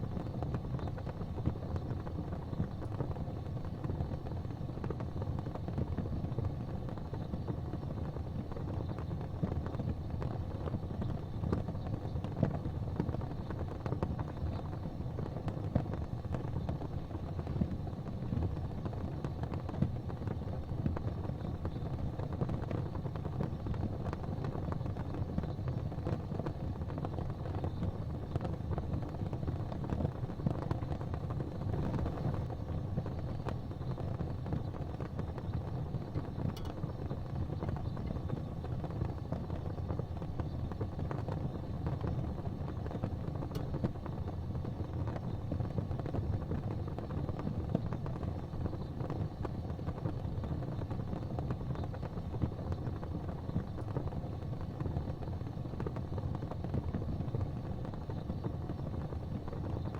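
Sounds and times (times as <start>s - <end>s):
gas fireplace flames rushing: 0.0s - 59.9s
faint clicks: 33.2s - 39.0s, 42.6s - 44.0s.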